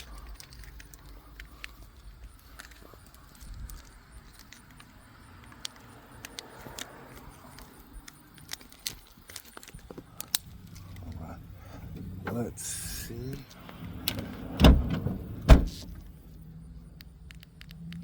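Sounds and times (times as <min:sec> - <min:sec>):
light clicks and ticks: 0:00.0 - 0:11.3, 0:16.8 - 0:18.0
car keys jangling: 0:00.0 - 0:16.1.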